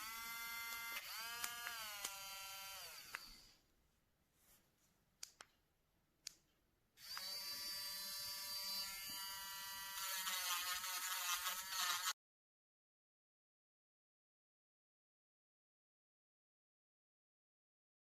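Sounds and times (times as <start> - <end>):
electric nail drill whine: 0.0 - 3.5, 7.0 - 12.2.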